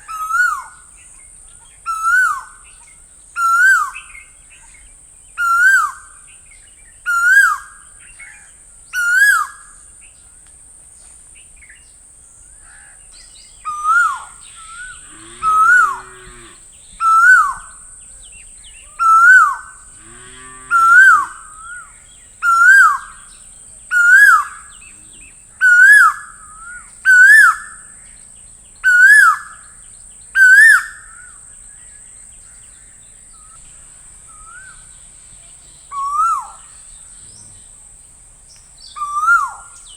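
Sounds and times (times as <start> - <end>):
lower hoot-like call: 13.7 - 17.7, 20.7 - 23.1
steady high hiss: 21.1 - 39.9.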